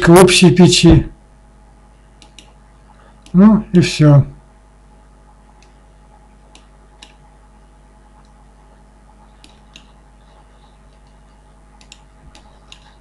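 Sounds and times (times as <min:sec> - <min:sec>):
low electrical hum: 0:00.0 - 0:13.0
faint computer mouse clicks: 0:02.2 - 0:02.6, 0:06.5 - 0:07.2, 0:09.4 - 0:10.0, 0:11.8 - 0:13.0.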